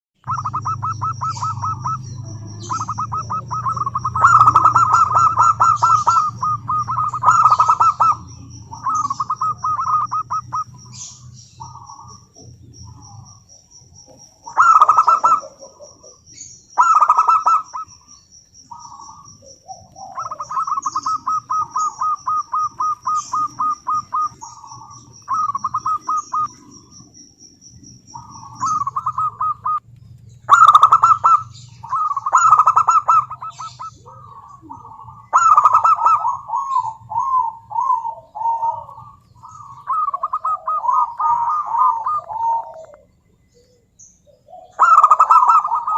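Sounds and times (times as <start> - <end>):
high-pitched pulsing trill: 0.2 - 13.5
doves cooing: 0.2 - 45.9.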